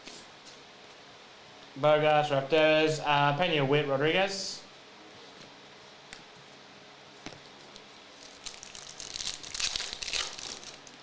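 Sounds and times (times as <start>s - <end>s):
plastic packaging crinkling: 8.2s - 11.0s.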